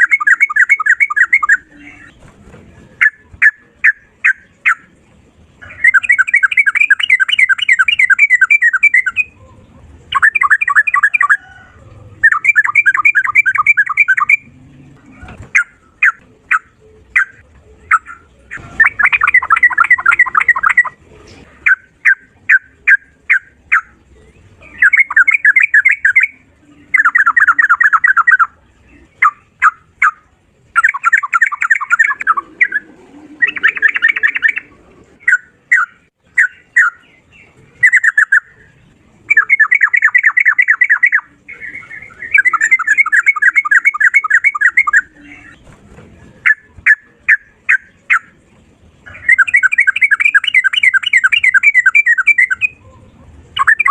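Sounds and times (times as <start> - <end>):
bird singing in rapid trills: 0.0 - 2.3, 2.9 - 21.0, 21.6 - 45.7, 46.4 - 53.9.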